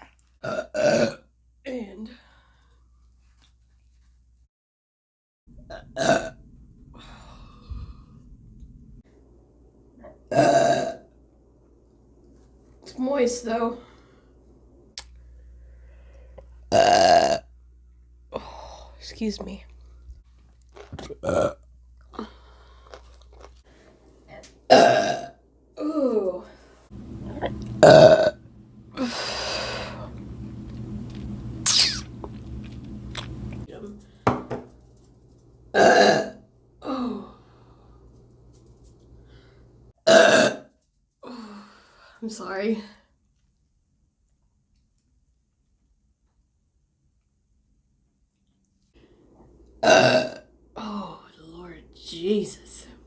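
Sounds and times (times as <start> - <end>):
woman burping: 0.4 - 1.2, 5.7 - 6.3, 10.3 - 11.0, 16.7 - 17.4, 24.7 - 26.2, 27.3 - 28.4, 35.8 - 37.2, 40.1 - 40.7, 49.8 - 50.4
high falling squeak: 31.7 - 32.1.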